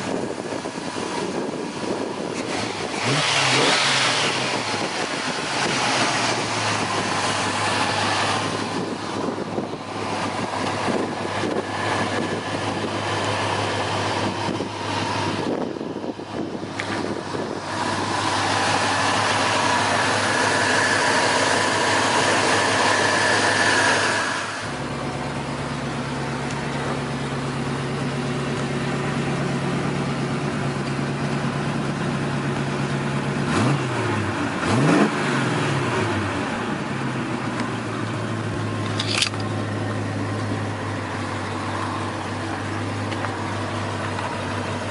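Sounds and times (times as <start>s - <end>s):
car engine running: 0.0s - 44.9s
engine revving blips: 2.4s - 8.9s, 33.5s - 36.4s.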